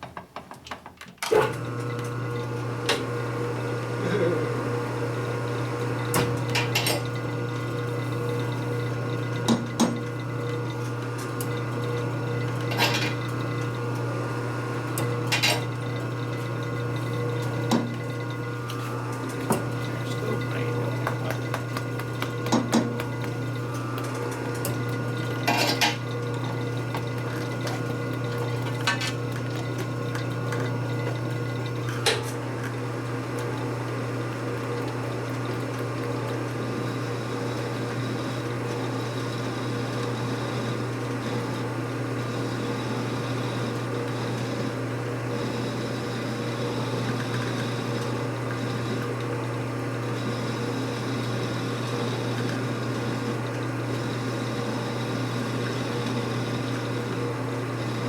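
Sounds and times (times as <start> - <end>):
steady machine hum: 2.9 - 40.7, 50.2 - 58.0.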